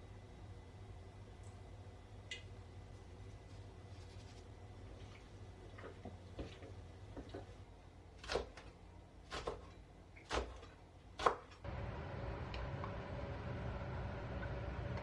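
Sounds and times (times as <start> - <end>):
low hum: 11.6 - 15.0.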